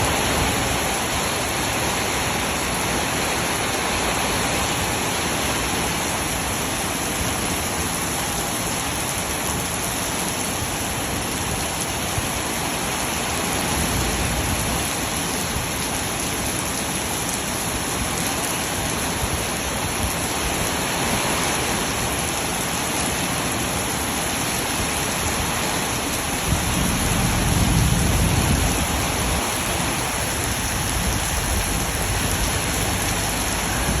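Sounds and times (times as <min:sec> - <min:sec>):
heavy rain pouring: 0:00.0 - 0:34.0
low rumble: 0:26.0 - 0:34.0.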